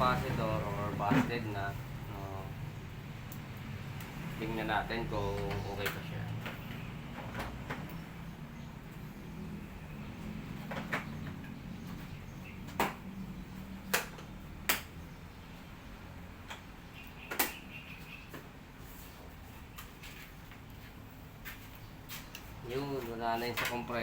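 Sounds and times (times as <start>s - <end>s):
tools clicking and tapping: 13.8s - 15.0s.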